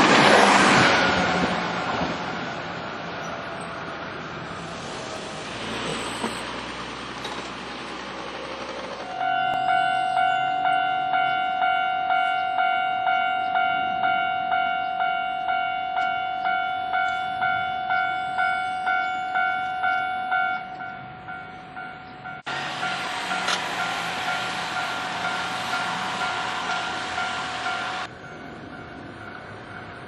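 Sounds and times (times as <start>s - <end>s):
level crossing warning bell: 0.6s - 2.5s, 9.0s - 30.0s.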